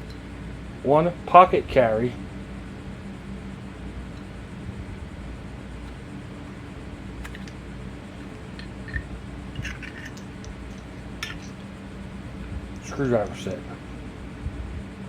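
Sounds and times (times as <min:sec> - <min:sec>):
low room hum: 0:00.0 - 0:15.0
small metal parts clicking: 0:07.2 - 0:07.6, 0:08.2 - 0:11.6, 0:12.8 - 0:13.4.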